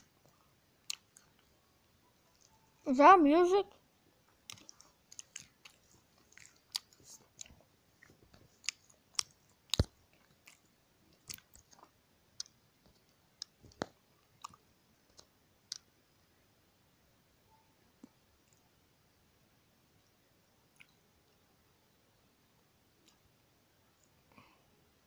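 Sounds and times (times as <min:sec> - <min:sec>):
faint clicks and taps: 0:04.4 - 0:15.9.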